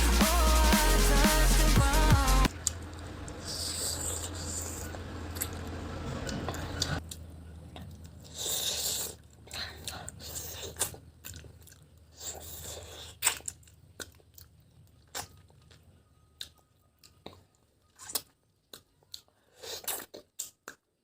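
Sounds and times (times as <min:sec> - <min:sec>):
person chewing: 0:02.5 - 0:21.0
crunch: 0:02.6 - 0:21.0
mouth clicks and smacks: 0:16.5 - 0:21.0.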